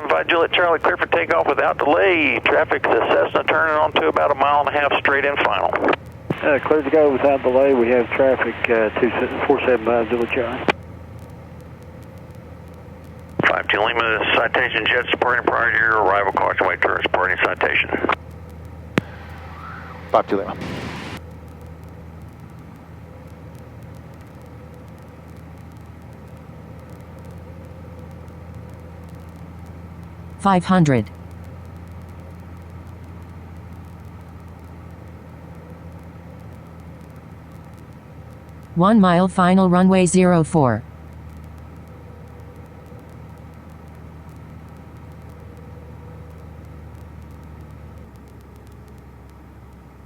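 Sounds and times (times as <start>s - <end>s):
light aircraft engine droning: 0.0s - 38.8s, 40.8s - 50.0s
faint clicks: 0.8s - 6.6s, 10.2s - 20.2s, 21.2s - 30.3s, 31.1s - 38.8s, 40.9s - 50.0s.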